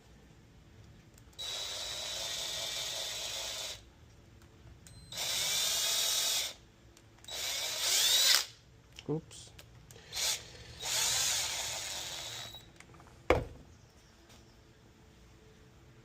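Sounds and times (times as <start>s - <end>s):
power drill running: 1.4s - 3.8s, 5.1s - 6.6s, 7.2s - 8.5s, 9.9s - 12.6s.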